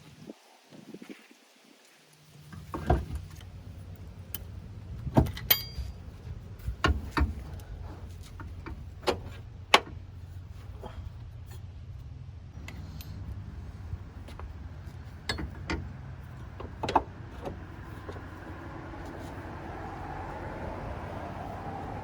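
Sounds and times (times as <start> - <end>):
metal clinks and knocks: 5.1 - 7.6, 14.2 - 18.2.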